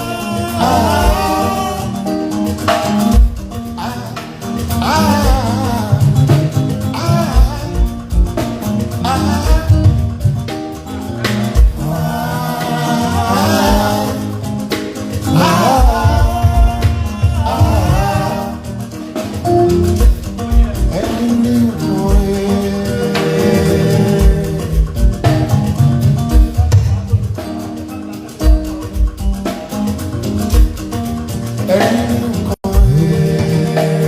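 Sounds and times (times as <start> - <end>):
person singing: 0.0 - 2.4, 3.6 - 8.3, 8.9 - 10.2, 11.2 - 19.0, 20.4 - 25.9, 31.6 - 34.0
band playing: 0.0 - 34.0.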